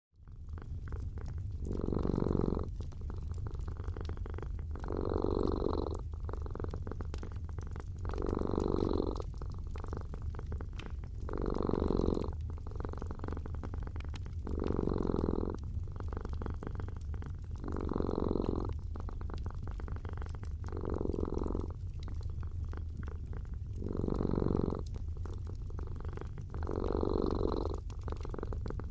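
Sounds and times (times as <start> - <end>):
steady low rumble: 0.2 - 28.9
wood fire crackling: 0.3 - 28.9
cat snoring: 1.2 - 2.8, 3.6 - 6.8, 8.0 - 9.2, 11.3 - 13.8, 14.4 - 19.4, 20.0 - 21.7, 23.8 - 24.9, 25.9 - 28.6.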